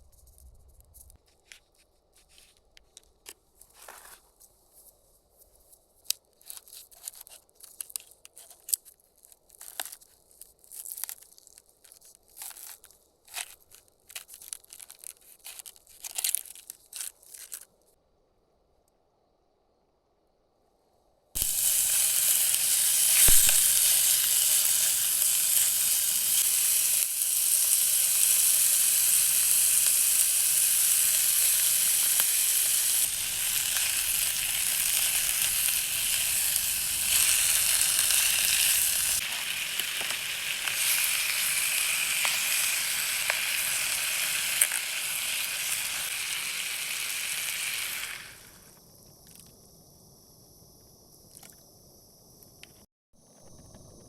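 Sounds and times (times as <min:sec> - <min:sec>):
food sizzling in a pan: 0:21.4 - 0:48.7.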